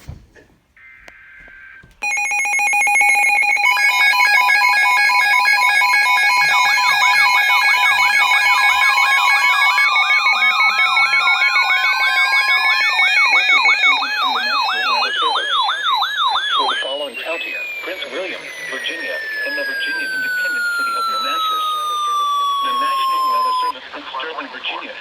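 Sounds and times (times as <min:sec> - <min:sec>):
electronic alarm tones: 0:00.8 - 0:23.7
warbling data tones: 0:00.8 - 0:24.7
pulsing beeps: 0:02.0 - 0:23.8
slowly rising tone: 0:06.5 - 0:23.7
up-and-down tone sweeps: 0:07.7 - 0:23.7.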